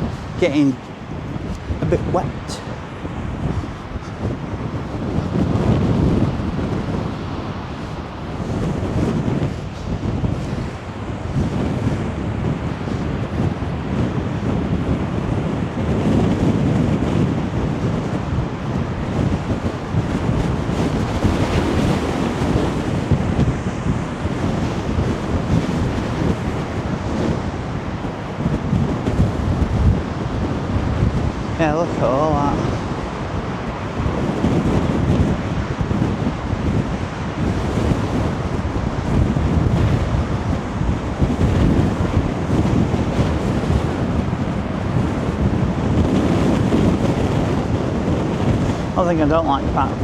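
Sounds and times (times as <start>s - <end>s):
rough sea surging against wall: 0.0s - 50.0s
wind buffeting microphone: 0.0s - 50.0s.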